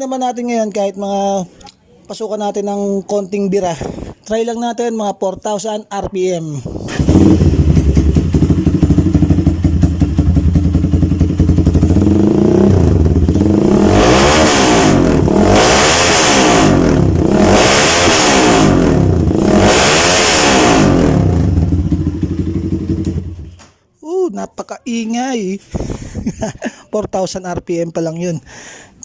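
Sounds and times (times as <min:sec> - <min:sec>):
motorcycle engine revving: 0:06.7 - 0:23.6.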